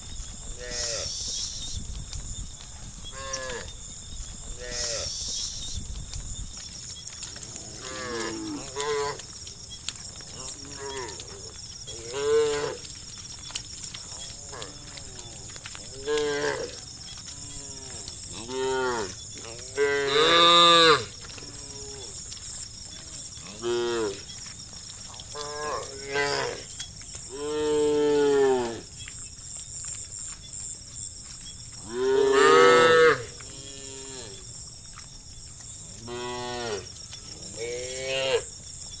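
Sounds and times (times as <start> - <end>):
cows mooing: 7.4 - 9.2, 10.2 - 13.0, 14.1 - 22.2, 23.4 - 24.3, 25.2 - 26.7, 31.8 - 34.4.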